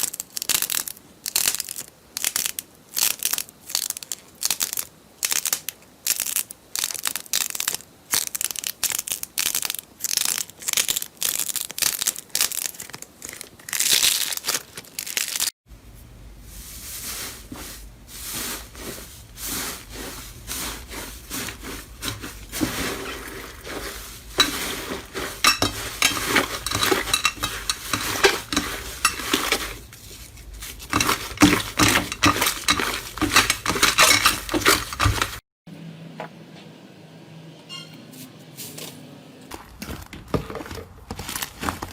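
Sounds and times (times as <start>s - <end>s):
slime crackling and popping: 0.0s - 15.5s.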